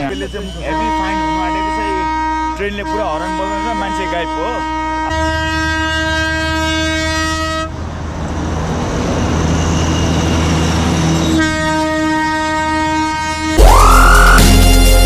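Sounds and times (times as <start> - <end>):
train horn blast: 0.0 - 7.8, 11.3 - 15.0
train rumble: 0.0 - 13.4.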